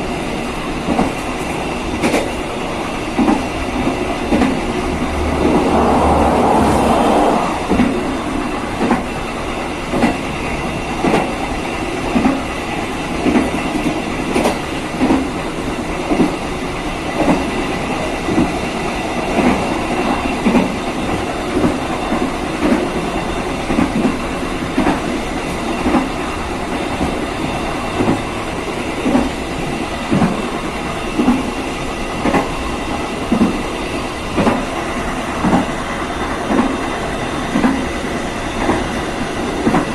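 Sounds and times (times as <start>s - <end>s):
train rumble: 0.0s - 39.9s
train wheels clickety-clack: 0.0s - 39.9s
rush of noise: 3.4s - 9.4s.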